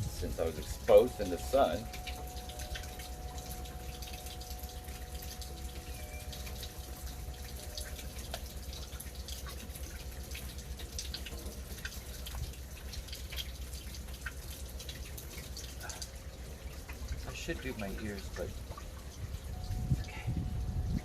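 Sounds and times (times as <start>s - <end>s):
water bubbling and dripping: 0.0s - 21.0s.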